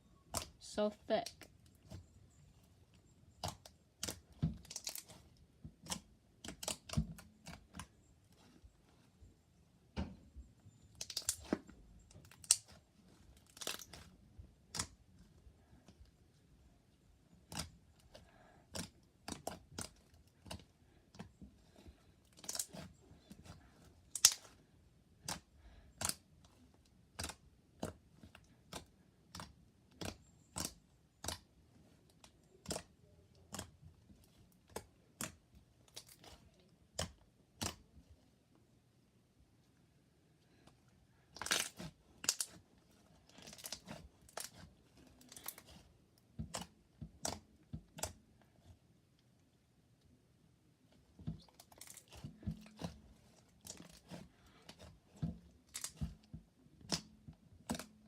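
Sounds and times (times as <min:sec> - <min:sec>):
slime clicking and popping: 0:05.8 - 0:07.9, 0:24.1 - 0:24.6, 0:27.1 - 0:28.0, 0:28.6 - 0:31.4, 0:34.7 - 0:37.8.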